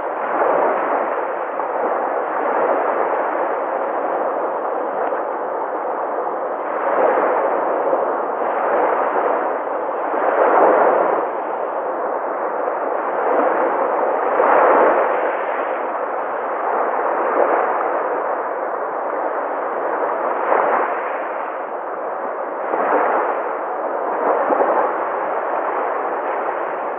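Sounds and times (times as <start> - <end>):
sea waves breaking: 0.0 - 26.9.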